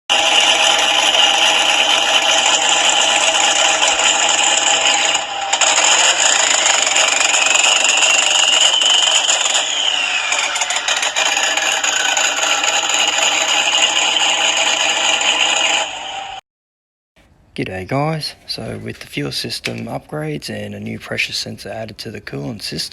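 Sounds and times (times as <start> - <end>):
loud harsh engine running hard: 0.1 - 16.4.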